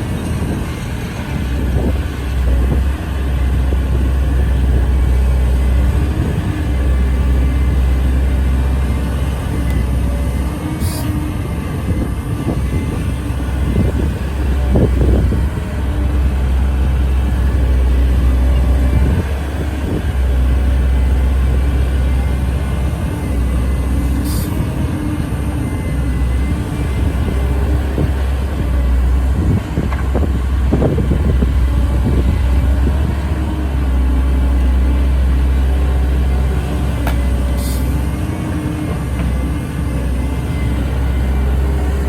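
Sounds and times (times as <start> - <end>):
heavy diesel engine running: 0.0 - 42.0.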